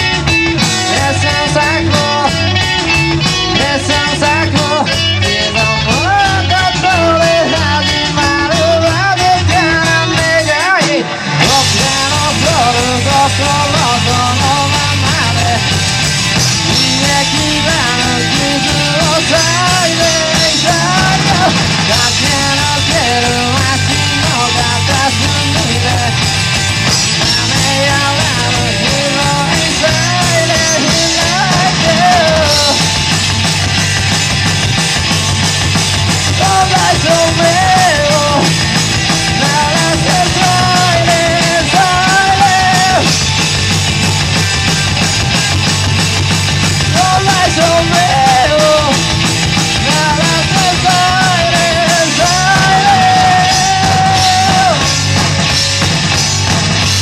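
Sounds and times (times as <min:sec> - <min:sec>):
person singing: 0:00.0 - 0:15.8, 0:16.4 - 0:26.5, 0:27.2 - 0:33.2, 0:36.2 - 0:43.3, 0:46.8 - 0:55.2
punk rock band playing live: 0:00.0 - 0:57.0.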